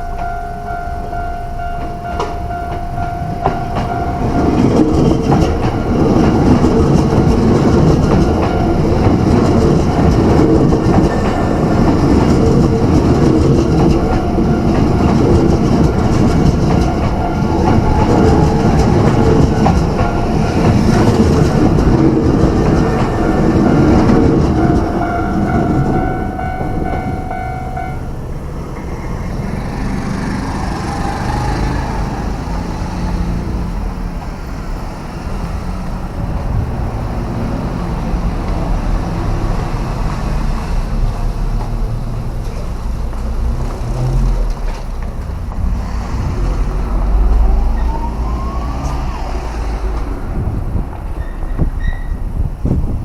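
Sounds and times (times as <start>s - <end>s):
steady tone: 0.0s - 29.2s
street traffic rumble: 0.0s - 53.0s.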